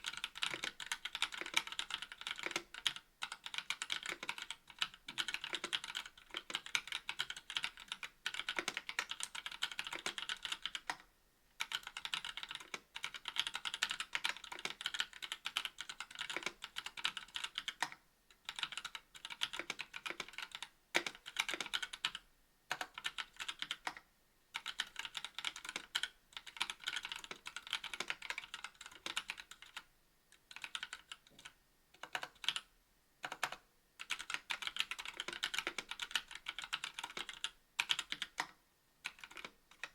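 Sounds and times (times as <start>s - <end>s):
mechanical keyboard typing: 0.0s - 24.0s, 24.6s - 39.9s.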